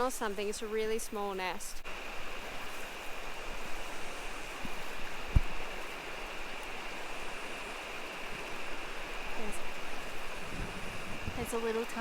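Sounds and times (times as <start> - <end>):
creek flowing: 0.0 - 12.0
dull thump: 4.6 - 5.6.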